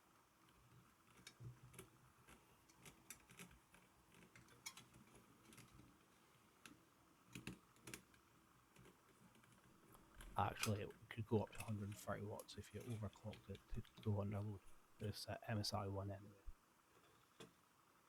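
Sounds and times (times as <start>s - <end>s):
small hard parts clicking: 0.5s - 14.1s.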